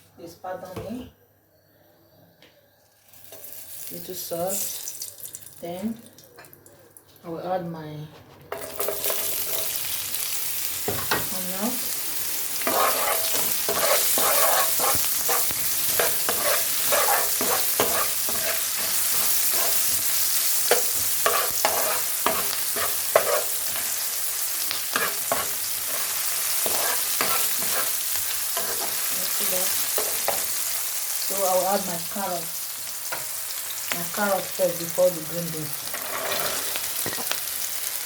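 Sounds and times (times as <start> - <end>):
onions sizzling in oil: 3.0 - 5.9, 8.6 - 38.0
spatula scraping a pan: 8.5 - 9.9, 12.6 - 24.1, 24.7 - 30.7, 35.8 - 37.4.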